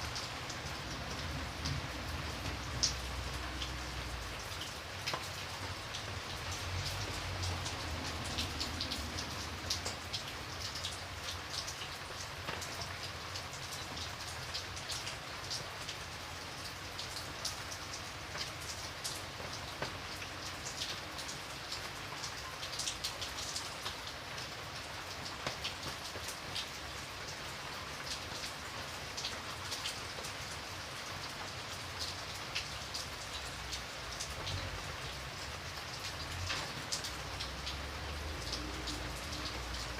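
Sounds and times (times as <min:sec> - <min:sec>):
raindrops ticking on a surface: 0:00.0 - 0:39.9
steady rain falling: 0:00.0 - 0:39.9.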